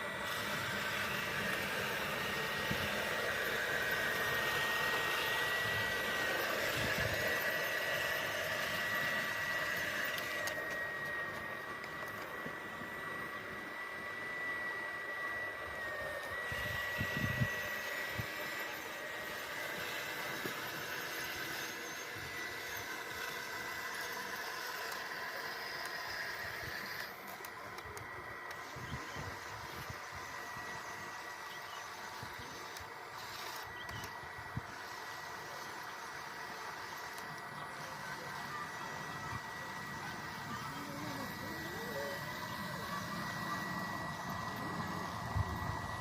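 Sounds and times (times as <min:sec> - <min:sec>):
small electric motor whining: 0:00.0 - 0:46.0.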